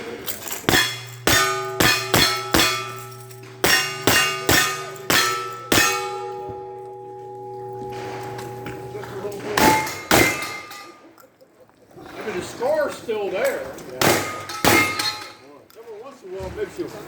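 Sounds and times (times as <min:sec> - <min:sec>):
steady low hum: 0:00.0 - 0:11.0, 0:14.0 - 0:15.4
metal clanging and ringing: 0:00.0 - 0:11.2, 0:14.0 - 0:15.4.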